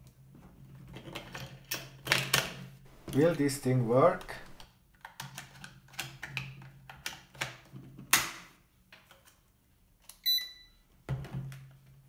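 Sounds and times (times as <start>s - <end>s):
short electronic beep: 10.3s - 10.8s.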